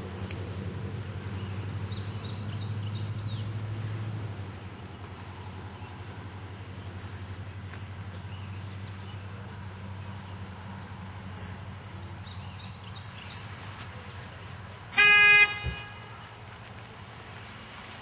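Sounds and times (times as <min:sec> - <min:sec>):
short horn toot: 0:14.9 - 0:16.2.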